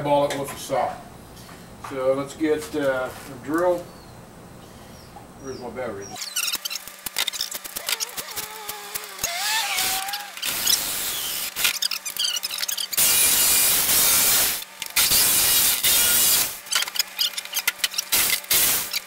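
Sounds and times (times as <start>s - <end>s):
plastic squeaks and clicks: 6.2s - 10.8s, 11.6s - 13.1s, 16.7s - 19.0s
power drill boring into plastic: 6.2s - 19.0s.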